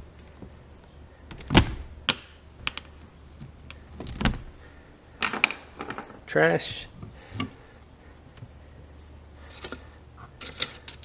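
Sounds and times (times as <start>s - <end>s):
hard objects knocking and clattering: 5.2s - 6.2s.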